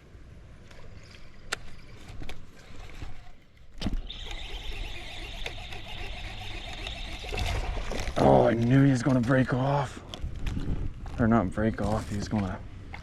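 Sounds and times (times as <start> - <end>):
fishing reel whirring: 0.9 - 8.2.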